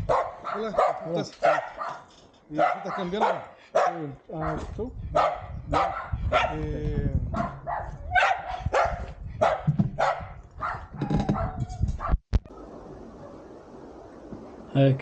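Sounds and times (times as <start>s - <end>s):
dog barking: 0.0s - 6.6s, 7.4s - 12.2s
man's voice: 0.5s - 1.4s, 2.5s - 5.0s, 6.4s - 7.7s.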